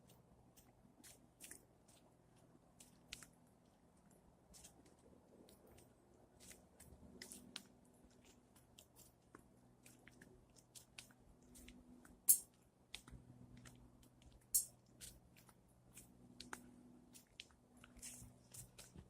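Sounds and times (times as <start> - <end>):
squirrel gnawing and chewing: 0.0 - 19.0.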